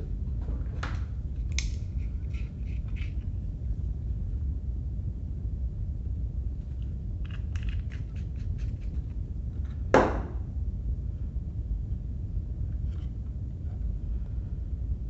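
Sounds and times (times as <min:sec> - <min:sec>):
low rumble: 0:00.0 - 0:15.0
small parts clicking: 0:07.2 - 0:09.0
sharp knock on workbench: 0:10.0 - 0:10.4.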